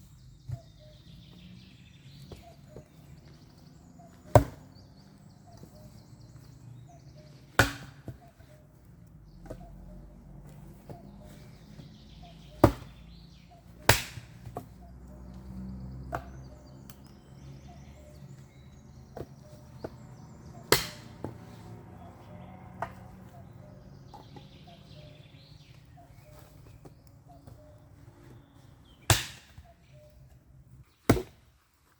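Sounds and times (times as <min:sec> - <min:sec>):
axe chopping wood: 0:04.1 - 0:04.8, 0:07.4 - 0:08.5, 0:10.8 - 0:13.0, 0:13.7 - 0:14.8, 0:16.0 - 0:17.1, 0:19.1 - 0:21.6, 0:29.0 - 0:29.7, 0:31.0 - 0:31.5.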